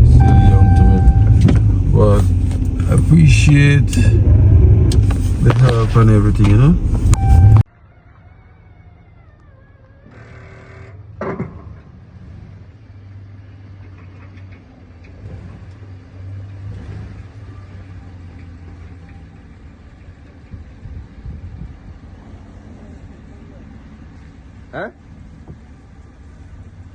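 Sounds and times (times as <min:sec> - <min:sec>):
brief pitched tone: 0:00.0 - 0:01.4, 0:07.1 - 0:07.7
snowplow engine running: 0:00.0 - 0:07.6, 0:09.7 - 0:26.9.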